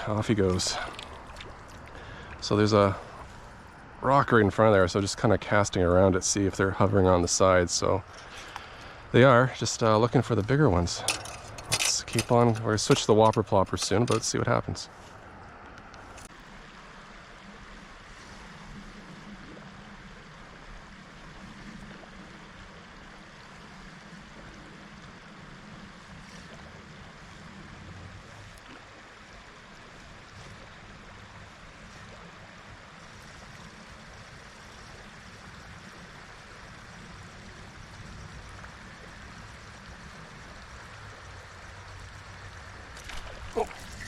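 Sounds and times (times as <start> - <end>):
river water rushing: 0.0 - 4.3, 38.8 - 44.0
faint ticks: 8.1 - 9.0.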